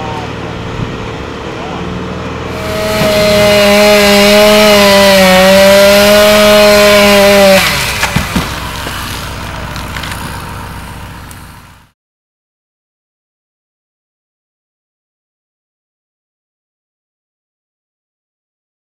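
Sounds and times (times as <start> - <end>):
chainsaw running at high revs: 2.5 - 11.9
sharp knocks: 2.6 - 9.0.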